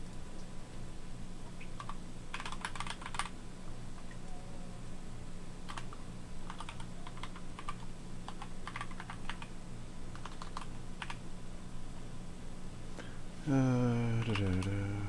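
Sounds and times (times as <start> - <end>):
computer keyboard typing: 1.8 - 3.3, 5.7 - 9.5, 10.1 - 11.2, 14.2 - 14.9.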